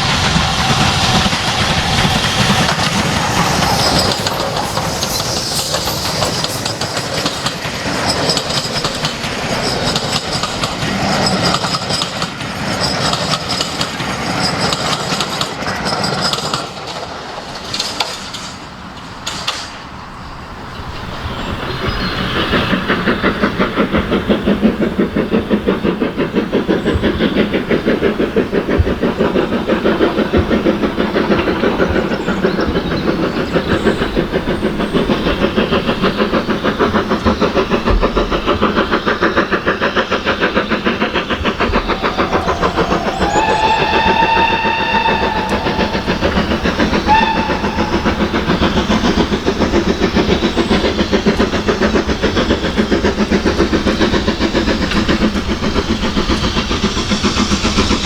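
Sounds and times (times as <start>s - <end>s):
steam locomotive whistle: 0.0s - 8.7s, 41.2s - 50.8s
steam locomotive exhaust beats: 0.0s - 58.0s.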